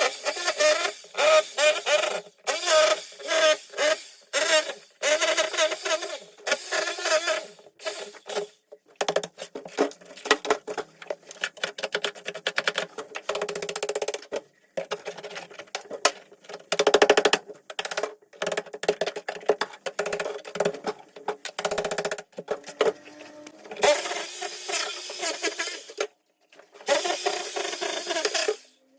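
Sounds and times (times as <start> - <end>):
power tool chiselling tiles: 0.0 - 8.6, 21.6 - 26.1, 26.8 - 28.8.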